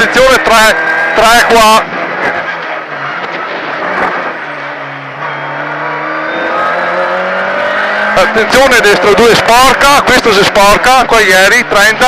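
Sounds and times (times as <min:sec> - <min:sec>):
car engine revving from cabin: 0:04.6 - 0:10.0.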